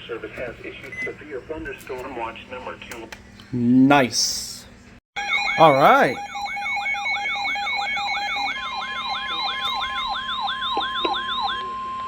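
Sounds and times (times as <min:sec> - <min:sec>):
steady warning tone: 0:05.2 - 0:12.0.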